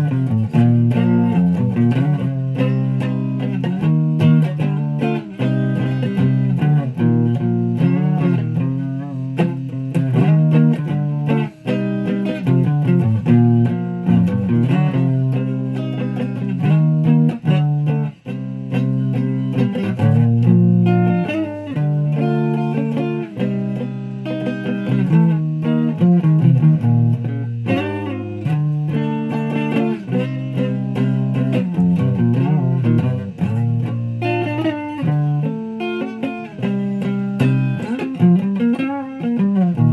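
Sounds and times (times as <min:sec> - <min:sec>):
guitar plucked notes and chords: 0:00.0 - 0:39.9.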